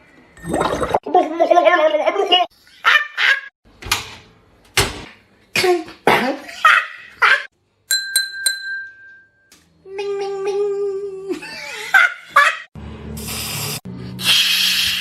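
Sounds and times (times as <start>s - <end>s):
bell-like ding: 7.9s - 9.5s.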